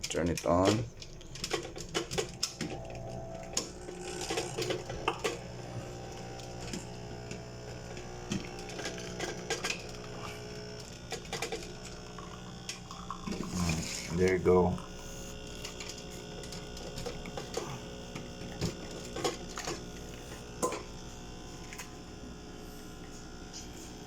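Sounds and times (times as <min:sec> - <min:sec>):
coffee machine humming: 0:00.6 - 0:24.0.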